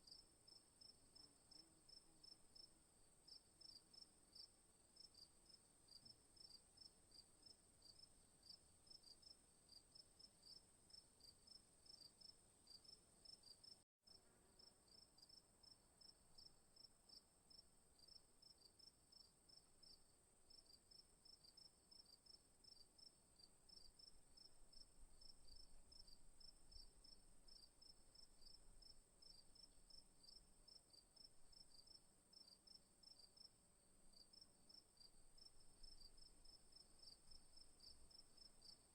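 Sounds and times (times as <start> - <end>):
rhythmic cricket chirping: 20.6 - 38.9.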